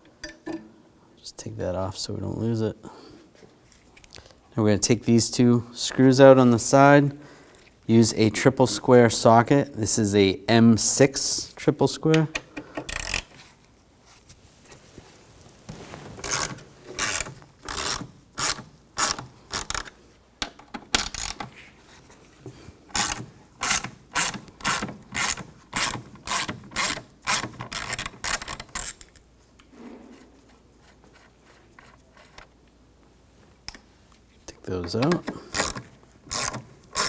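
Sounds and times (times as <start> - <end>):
hand ratchet clicking: 12.8 - 13.3, 22.9 - 29.1, 34.9 - 37.0.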